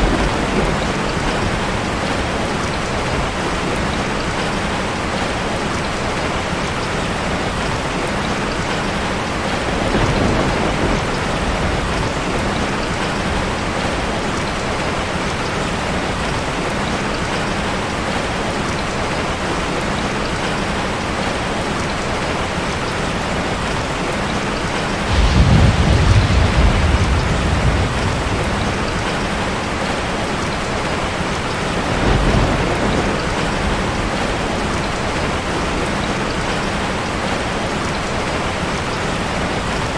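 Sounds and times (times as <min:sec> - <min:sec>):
thunder rumbling: 0:00.0 - 0:04.8, 0:09.7 - 0:15.0, 0:25.0 - 0:36.6
heavy rain falling: 0:00.0 - 0:39.9.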